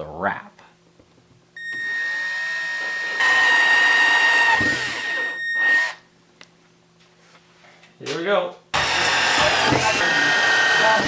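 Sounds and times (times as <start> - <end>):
electric tool motor whining: 1.6 - 6.0, 8.8 - 11.0.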